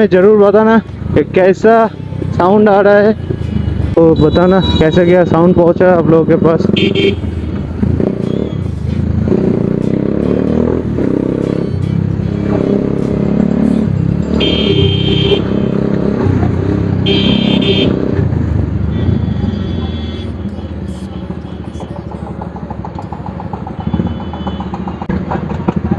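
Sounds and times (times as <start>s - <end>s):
motorcycle engine revving: 6.1s - 25.9s
exhaust popping and crackling: 20.7s - 25.9s.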